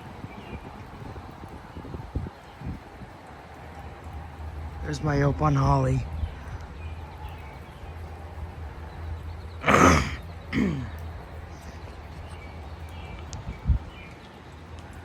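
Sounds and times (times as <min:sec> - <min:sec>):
wind rumble on microphone: 0:00.0 - 0:09.6, 0:10.2 - 0:15.0
short vocal sounds: 0:09.6 - 0:10.9.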